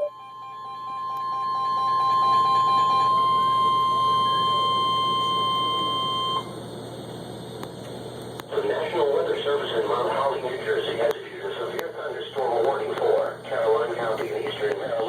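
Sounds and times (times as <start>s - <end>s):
steady warning alarm tone: 0.0s - 6.6s
radio hiss: 8.5s - 15.0s.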